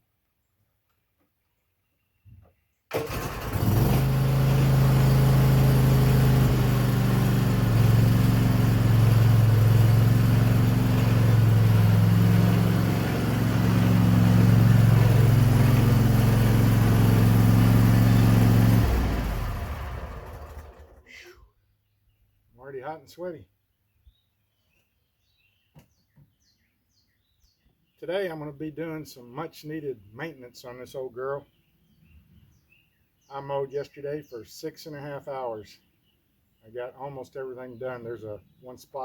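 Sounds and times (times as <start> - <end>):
riding mower engine running: 2.9 - 21.2.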